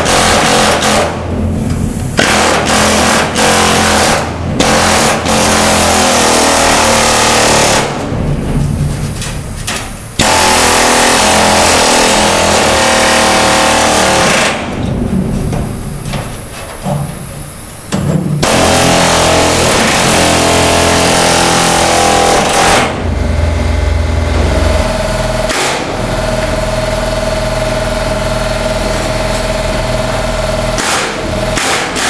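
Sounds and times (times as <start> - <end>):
air chisel hammering sheet metal: 0.0 - 1.2, 2.2 - 8.0, 9.7 - 14.7, 18.4 - 23.1, 24.7 - 26.0, 30.8 - 32.0.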